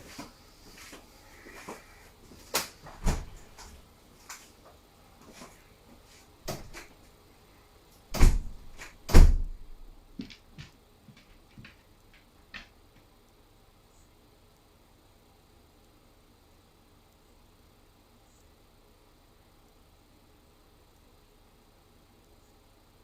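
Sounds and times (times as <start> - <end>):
heavy door thuds: 2.9 - 3.5, 8.1 - 9.8.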